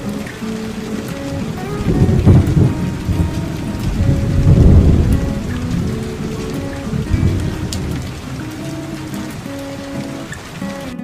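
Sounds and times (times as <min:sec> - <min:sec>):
plucked guitar notes: 0:00.0 - 0:11.0
steady rain: 0:00.0 - 0:11.0
rolling thunder: 0:01.2 - 0:09.6.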